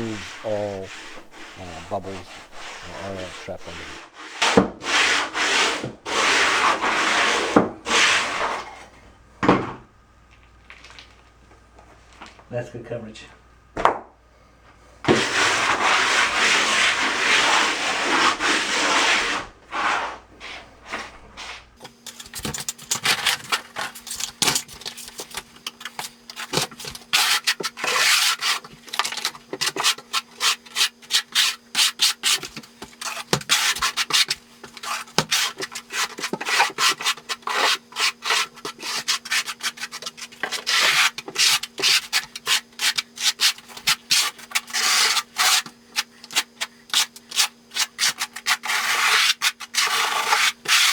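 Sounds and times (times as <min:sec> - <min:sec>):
faint steady hum: 0:00.0 - 0:04.1
quick rubbing strokes: 0:00.0 - 0:04.1
wooden float scraping: 0:00.0 - 0:04.1.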